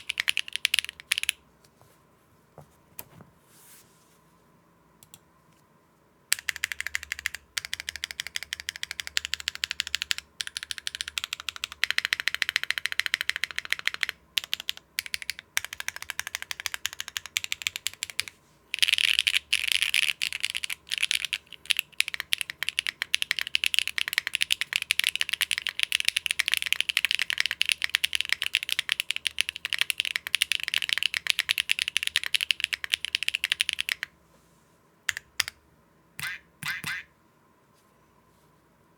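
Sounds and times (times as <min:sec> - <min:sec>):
typing on mechanical keyboard: 0:00.0 - 0:01.4, 0:06.3 - 0:34.1, 0:35.1 - 0:35.6.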